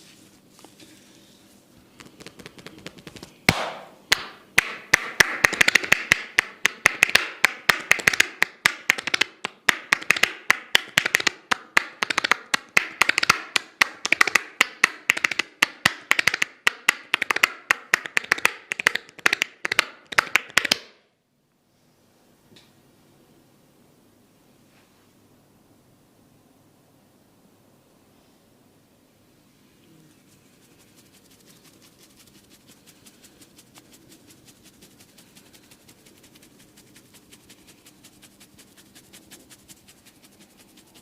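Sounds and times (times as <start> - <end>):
percussive massager tapping: 2.0 - 21.0.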